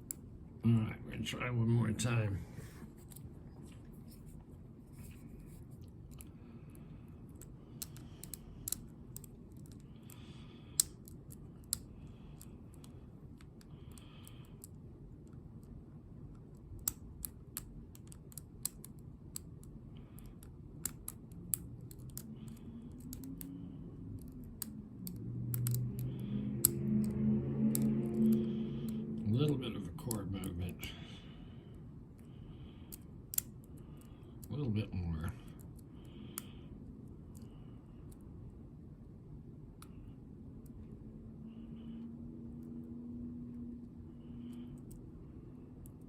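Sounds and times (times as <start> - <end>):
lock picking metallic clicks: 7.4 - 15.7, 16.3 - 23.5, 24.2 - 28.4, 32.9 - 34.1.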